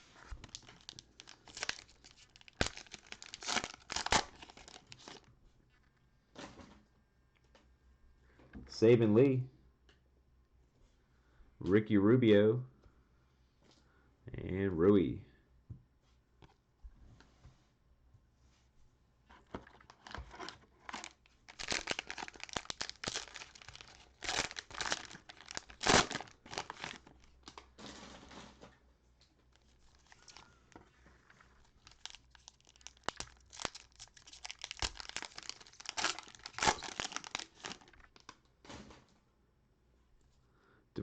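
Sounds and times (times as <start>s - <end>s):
cellophane wrapper crinkling: 0.0s - 5.3s, 19.6s - 27.8s, 29.5s - 38.4s.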